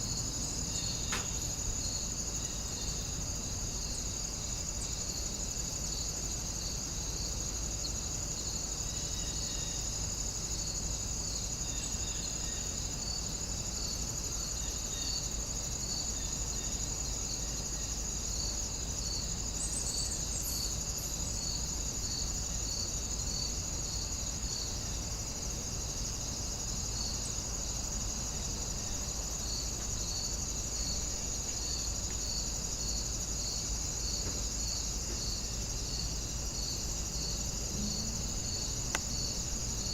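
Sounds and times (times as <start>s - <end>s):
crickets trilling: 0.0s - 39.9s
slow cricket chirp: 0.0s - 39.9s
faint low rumble: 37.6s - 39.9s.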